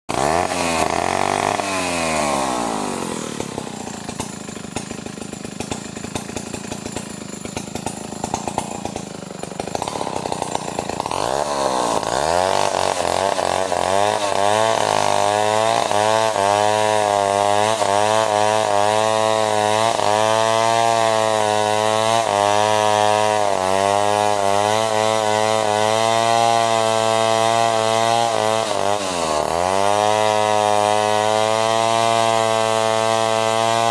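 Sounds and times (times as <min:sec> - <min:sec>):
chainsaw revving and idling: 0:00.1 - 0:33.9.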